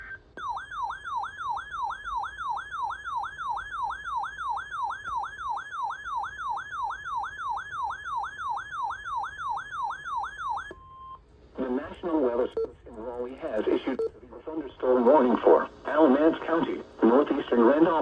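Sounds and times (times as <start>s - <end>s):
electronic alert siren: 0.0s - 10.8s.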